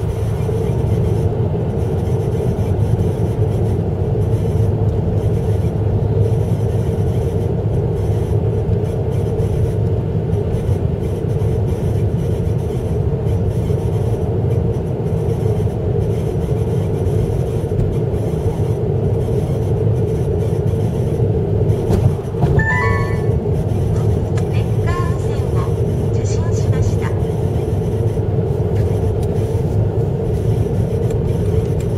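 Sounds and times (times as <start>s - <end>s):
car driving with low rumble: 0.0s - 31.9s
short high-pitched sounds: 22.6s - 23.4s.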